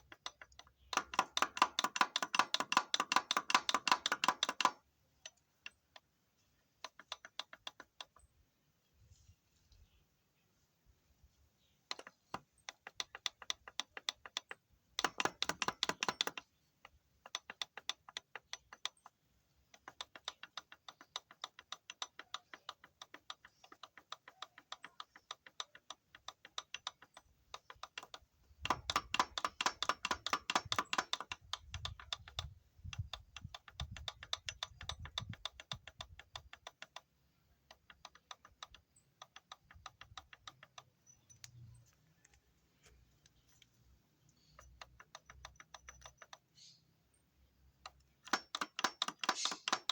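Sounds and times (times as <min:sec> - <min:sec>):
metallic clutch rattle at idle: 0:11.9 - 0:37.1.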